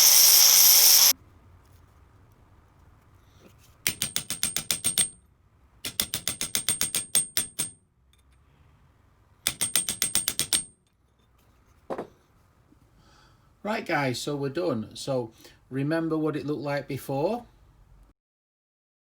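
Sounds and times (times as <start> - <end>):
short knock: 11.9 - 12.2.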